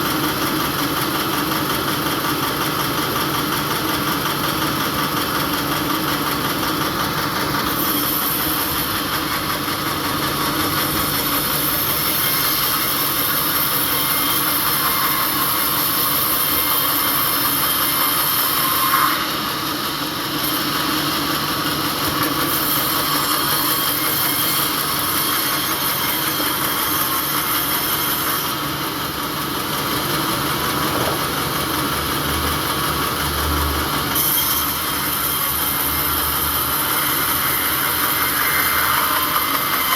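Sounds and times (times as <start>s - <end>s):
sawmill machinery drone: 0.0s - 39.9s.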